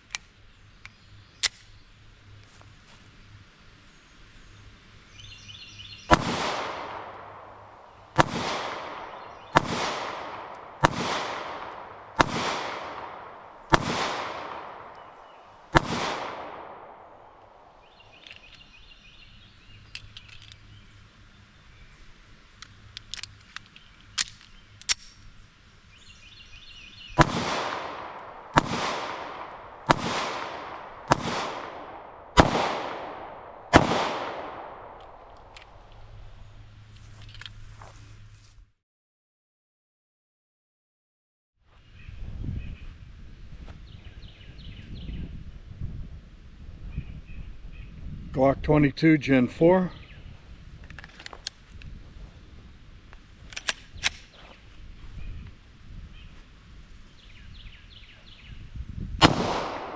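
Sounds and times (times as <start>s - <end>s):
magazine change clicks: 0.0s - 1.8s, 18.1s - 18.7s, 19.9s - 20.7s, 22.6s - 25.3s, 53.1s - 54.3s
pistol shots with echo: 6.1s - 17.4s, 27.2s - 35.3s, 59.2s - 59.9s.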